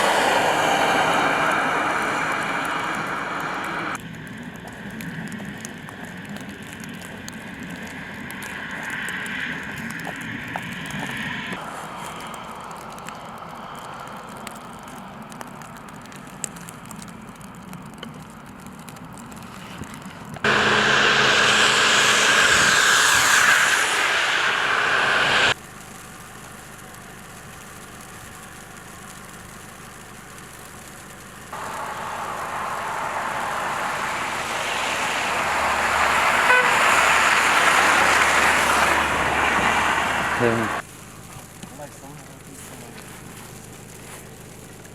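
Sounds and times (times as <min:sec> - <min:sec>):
road traffic noise: 0:00.0 - 0:16.7, 0:18.9 - 0:25.6, 0:31.2 - 0:44.9.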